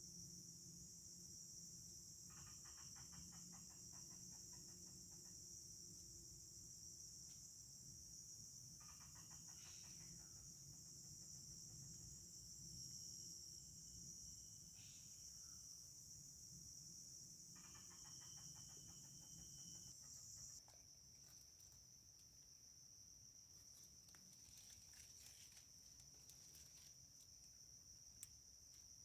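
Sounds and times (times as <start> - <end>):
insect chorus chirring: 0.0 - 29.0
rapidly pulsing insect call: 0.0 - 29.0
faint ticks: 28.2 - 28.9.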